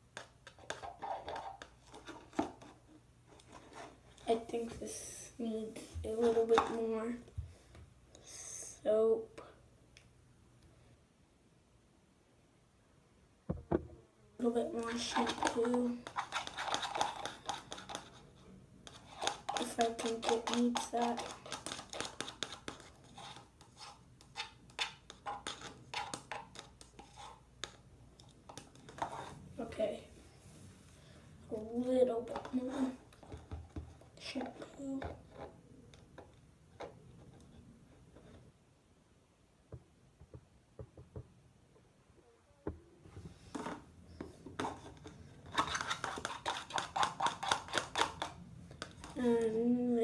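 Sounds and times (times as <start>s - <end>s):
plastic knife scraping container: 0.2s - 2.8s, 14.8s - 27.8s, 28.5s - 29.7s, 31.5s - 33.6s, 44.6s - 49.5s.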